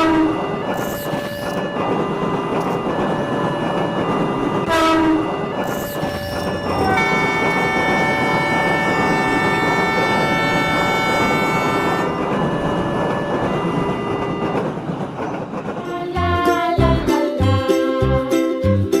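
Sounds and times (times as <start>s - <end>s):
train horn: 0.0s - 0.6s, 4.6s - 5.6s, 6.8s - 14.7s
rumble of passing train: 0.0s - 19.0s.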